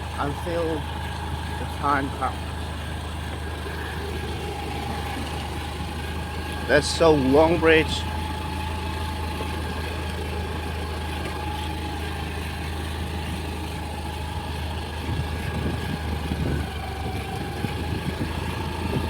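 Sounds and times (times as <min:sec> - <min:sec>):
rough uneven engine rumble: 0:00.0 - 0:19.0
scooter engine running: 0:00.0 - 0:19.0.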